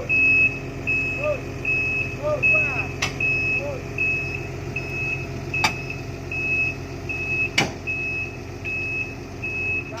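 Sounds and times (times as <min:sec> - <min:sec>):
diesel engine running low: 0:00.0 - 0:10.0
travel alarm beeping: 0:00.0 - 0:10.0
sharp knocks: 0:07.6 - 0:07.8.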